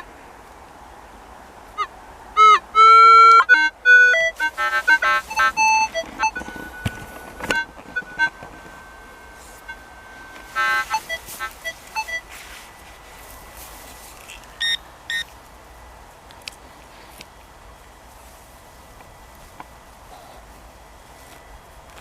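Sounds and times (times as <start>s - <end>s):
metal detector beeps: 2.4s - 12.4s, 14.6s - 15.3s
metal detector steady tone: 2.4s - 15.4s.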